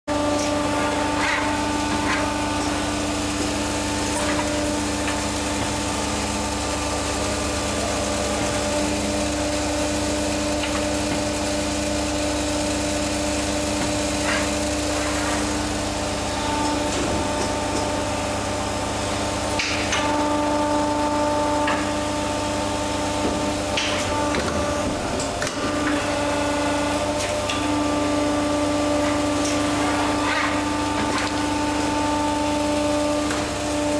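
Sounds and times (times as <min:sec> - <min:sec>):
injection moulding machine hum: 0:00.1 - 0:33.9.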